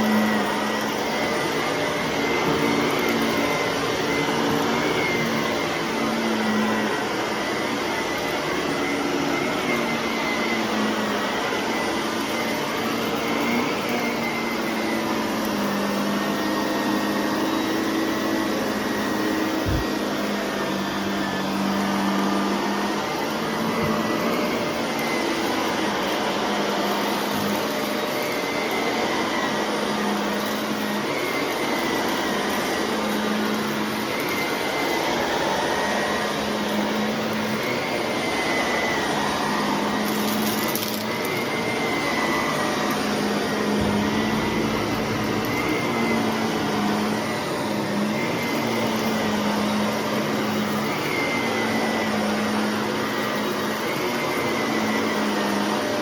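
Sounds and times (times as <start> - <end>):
vacuum cleaner running: 0.0 - 56.0.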